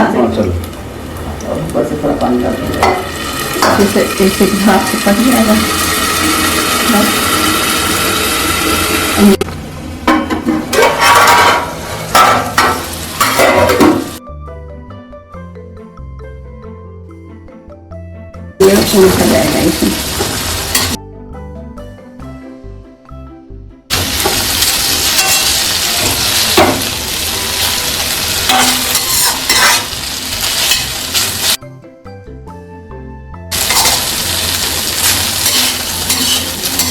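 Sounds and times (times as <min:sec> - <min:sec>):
food sizzling in a pan: 0:00.6 - 0:09.4, 0:10.8 - 0:14.2, 0:18.7 - 0:21.0, 0:23.9 - 0:31.6, 0:33.5 - 0:36.9
light tuned music: 0:14.1 - 0:36.9
spoon stirring and scraping pan: 0:25.0 - 0:26.9, 0:28.0 - 0:31.6, 0:33.6 - 0:36.9.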